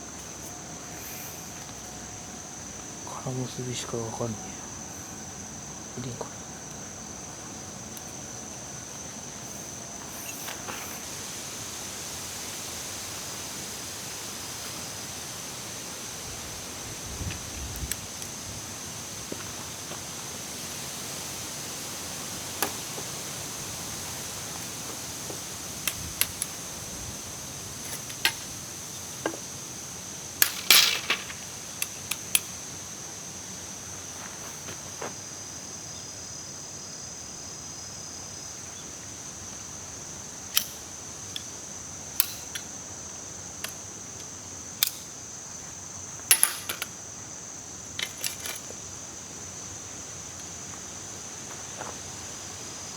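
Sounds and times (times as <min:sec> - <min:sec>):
steady high-pitched hiss: 0:00.0 - 0:52.9
camping gear clicks and knocks: 0:22.4 - 0:23.3, 0:24.0 - 0:26.6, 0:27.8 - 0:29.6, 0:30.4 - 0:32.6, 0:40.4 - 0:42.8, 0:43.6 - 0:45.2, 0:46.2 - 0:47.0, 0:47.9 - 0:48.9.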